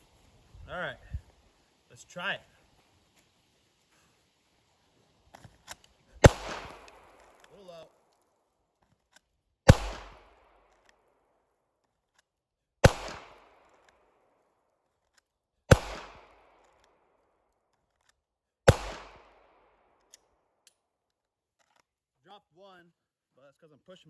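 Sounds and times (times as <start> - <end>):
pistol shots with echo: 6.2 - 7.2, 9.7 - 10.6, 12.8 - 13.7, 15.7 - 16.6, 18.7 - 19.6.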